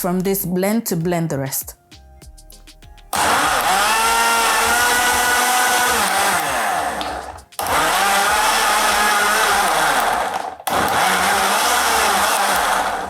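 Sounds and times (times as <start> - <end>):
blender motor whining: 3.2 - 13.0.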